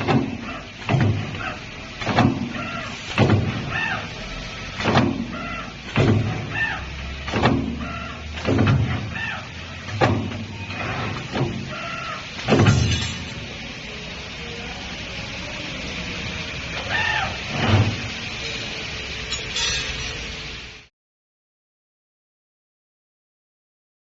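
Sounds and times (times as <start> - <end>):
machine clunks: 0.0 - 3.7, 4.7 - 6.6, 7.2 - 9.2, 12.4 - 13.5, 19.3 - 20.3.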